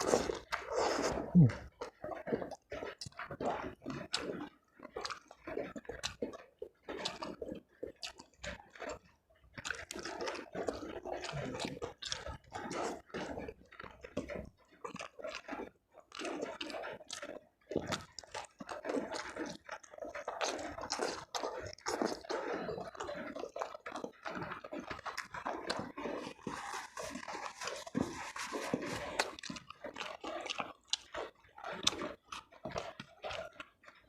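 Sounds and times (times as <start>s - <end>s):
person chewing food: 0.0s - 34.0s.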